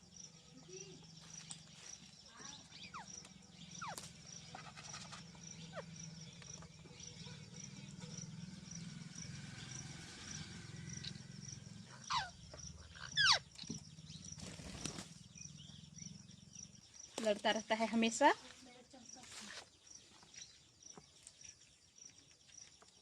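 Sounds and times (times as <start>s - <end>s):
parakeet screeching calls: 11.9s - 13.5s.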